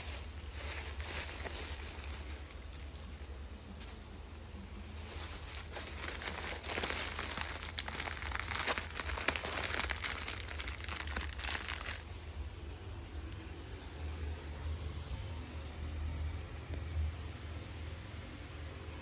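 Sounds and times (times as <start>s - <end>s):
packaging crinkling: 0.0s - 12.2s.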